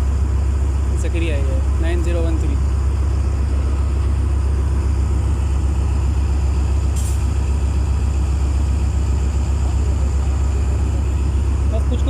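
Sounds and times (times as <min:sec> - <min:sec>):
diesel locomotive engine idling: 0:00.0 - 0:12.0
air release hiss: 0:07.0 - 0:07.3.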